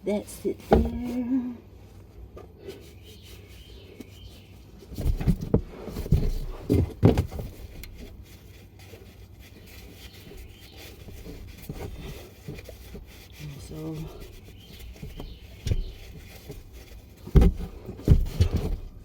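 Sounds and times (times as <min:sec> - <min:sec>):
faint handling of tools: 0:00.0 - 0:19.0
dull low thumps and knocks: 0:04.9 - 0:07.9, 0:14.7 - 0:19.0.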